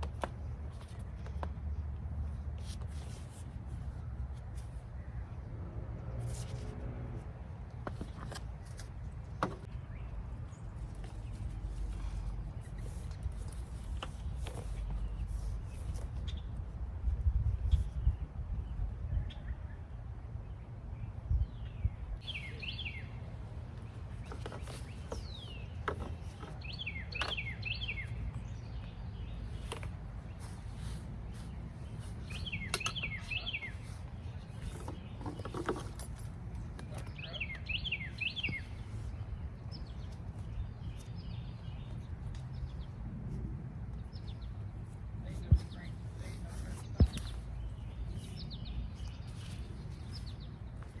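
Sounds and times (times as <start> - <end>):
songbird chirping: 17.6 - 43.1, 43.8 - 51.0.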